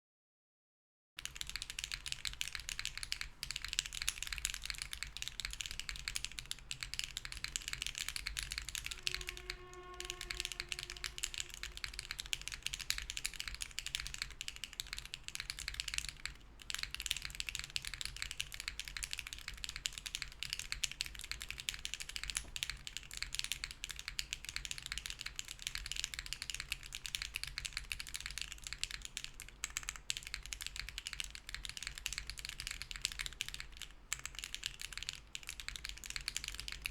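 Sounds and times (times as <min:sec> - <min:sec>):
fast typing on mechanical keyboard: 0:01.2 - 0:36.9
brief pitched tone: 0:08.6 - 0:12.4.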